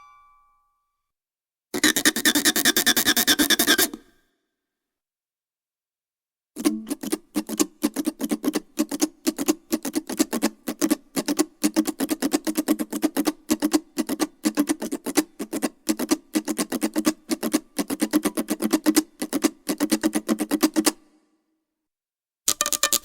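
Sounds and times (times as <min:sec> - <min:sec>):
mandolin picking: 0:06.6 - 0:12.3.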